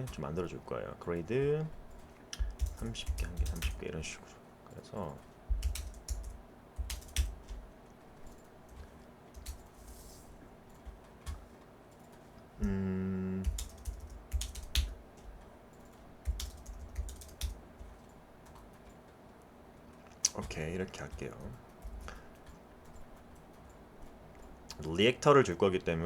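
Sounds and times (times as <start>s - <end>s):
keyboard typing and clicking: 1.9s - 3.8s, 5.5s - 10.0s, 10.7s - 12.8s, 13.4s - 19.2s, 20.3s - 24.6s.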